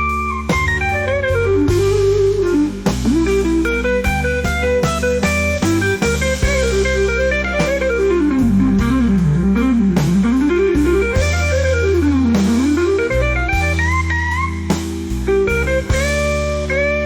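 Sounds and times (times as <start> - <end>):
instrumental blues music: 0.0 - 17.0.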